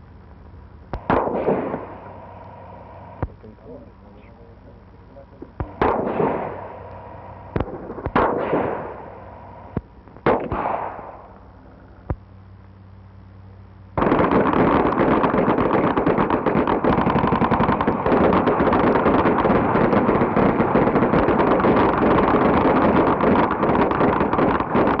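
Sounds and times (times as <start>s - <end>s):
machine-gun fire: 0.9s - 3.4s, 5.6s - 11.4s, 14.0s - 25.0s
gunshots echoing: 1.0s - 3.4s, 5.6s - 11.4s, 14.0s - 25.0s.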